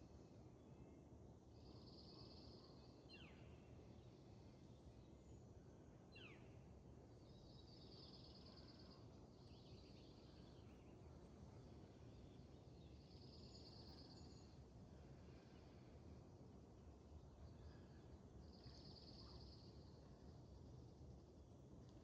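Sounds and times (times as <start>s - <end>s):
low outdoor background hum: 0.0s - 22.0s.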